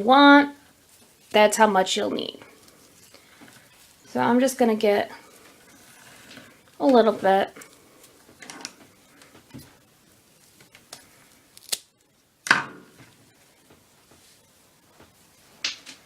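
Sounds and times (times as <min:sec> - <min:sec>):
twine rustling: 0:00.0 - 0:12.2.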